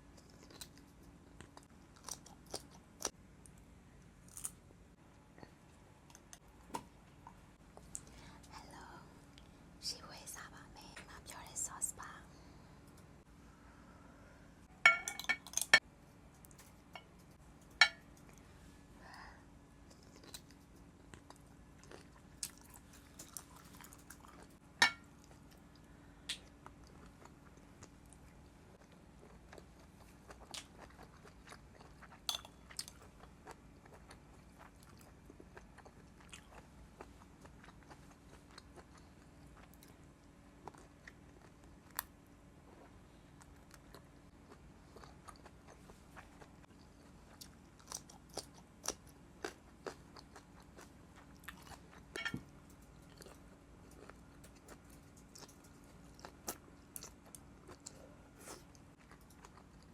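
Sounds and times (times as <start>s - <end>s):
wet chewing and mouth clicks: 28.8s - 40.0s.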